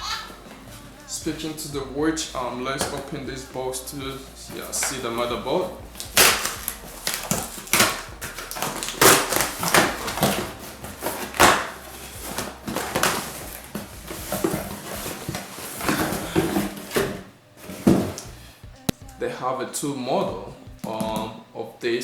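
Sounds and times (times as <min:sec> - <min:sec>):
cardboard box packaging handled: 0:02.3 - 0:18.4.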